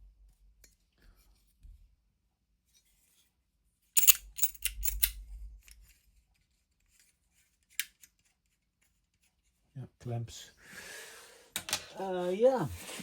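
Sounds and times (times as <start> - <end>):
sharp clicks of metal tools: 4.0 - 5.1.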